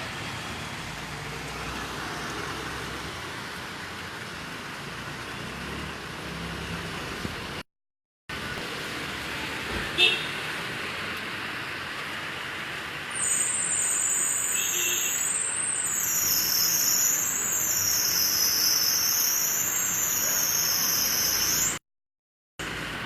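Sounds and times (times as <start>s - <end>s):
heavy rain hissing: 8.4s - 21.8s.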